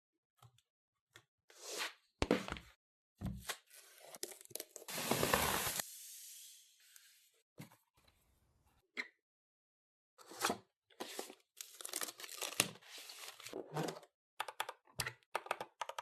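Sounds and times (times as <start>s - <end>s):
packaging rustling and tearing: 11.6s - 13.6s.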